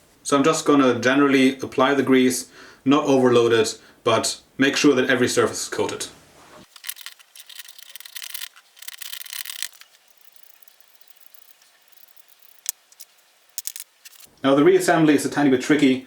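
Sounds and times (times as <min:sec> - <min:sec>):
grease rubbing on metal gears: 0:06.6 - 0:14.3.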